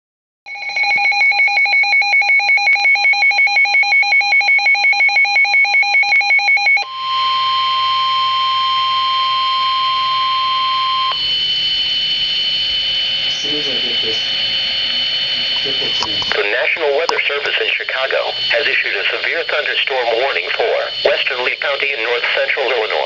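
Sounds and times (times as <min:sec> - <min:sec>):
long steady alert tone: 0:00.5 - 0:23.0
rapid electronic beeping: 0:06.8 - 0:23.0.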